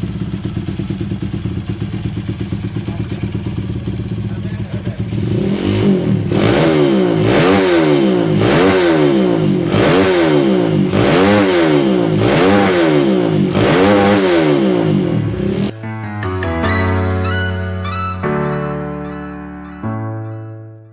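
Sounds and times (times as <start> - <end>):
motorcycle engine revving: 0.0 - 15.8.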